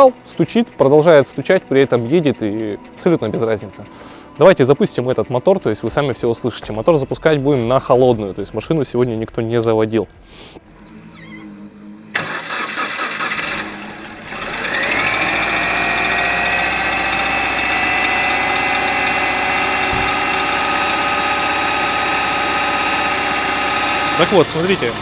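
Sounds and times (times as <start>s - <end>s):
starter motor cranking: 10.8s - 25.0s
engine tapping: 12.2s - 25.0s
car engine idling with whine: 13.5s - 25.0s.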